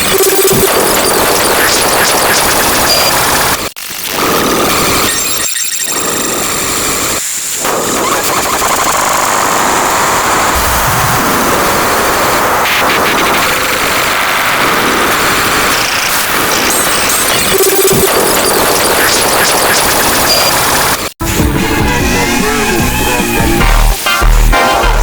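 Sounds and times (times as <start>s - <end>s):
overlapping sound effects: 0.0s - 3.6s, 16.6s - 25.0s
distorted noise: 0.0s - 25.0s.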